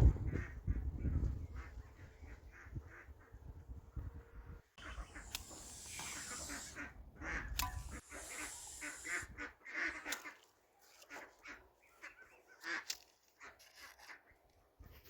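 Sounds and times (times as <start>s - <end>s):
farmyard fowl calling: 4.8s - 10.4s.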